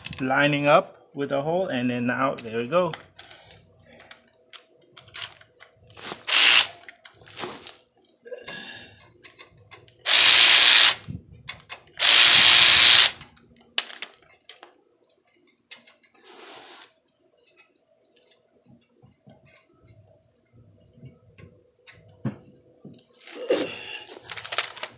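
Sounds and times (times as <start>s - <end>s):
power tool bursts: 6.2s - 6.8s, 10.1s - 11.0s, 12.0s - 13.2s.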